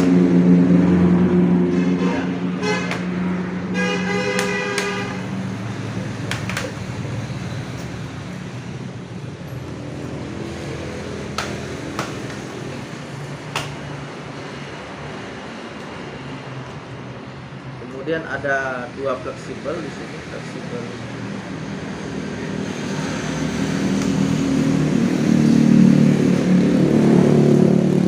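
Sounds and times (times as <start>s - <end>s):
vehicle engine passing: 0.0s - 16.6s, 19.2s - 28.0s
vehicle horn: 1.6s - 5.4s
plastic clips prying apart: 6.2s - 6.8s.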